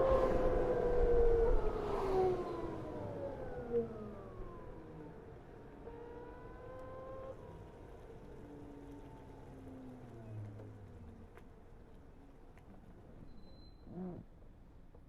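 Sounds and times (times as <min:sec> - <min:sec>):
electric scooter motor whine: 0:00.0 - 0:10.9
wind and road noise: 0:00.0 - 0:13.3.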